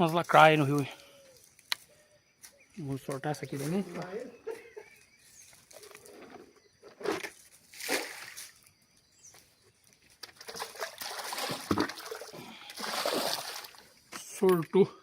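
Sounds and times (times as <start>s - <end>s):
water splashing and trickling: 7.0s - 8.7s, 10.0s - 14.4s.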